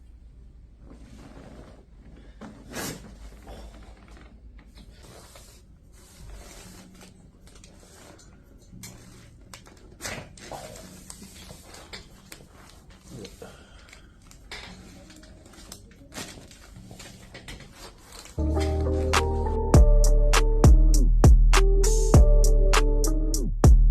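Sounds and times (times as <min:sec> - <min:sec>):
shuffling and handling noise: 0:00.8 - 0:19.7.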